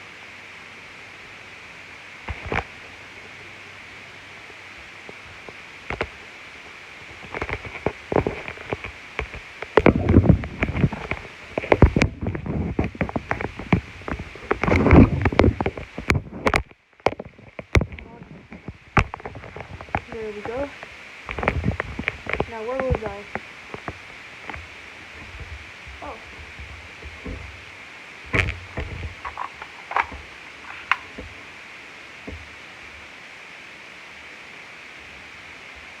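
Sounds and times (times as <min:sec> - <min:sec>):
steady hiss: 0:00.0 - 0:36.0
rustling handling noise: 0:05.1 - 0:31.6.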